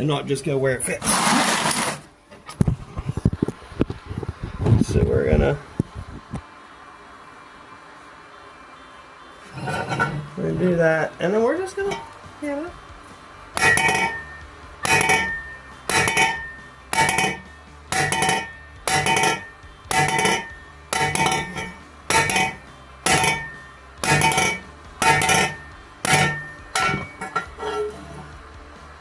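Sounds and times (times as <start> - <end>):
hammer striking metal pipe: 13.6 - 28.1.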